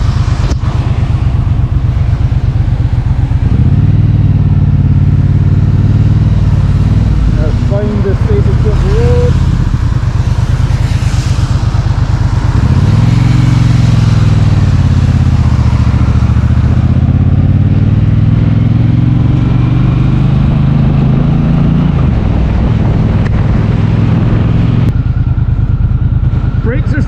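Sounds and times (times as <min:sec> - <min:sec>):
motorcycle engine under throttle: 0:00.0 - 0:27.0.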